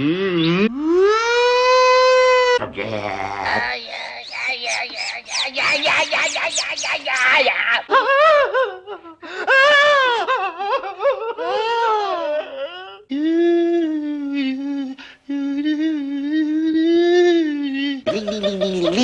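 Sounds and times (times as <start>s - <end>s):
man whining vocal noises: 0.0s - 7.9s, 12.0s - 19.0s
man humming: 2.5s - 7.6s, 13.1s - 19.0s.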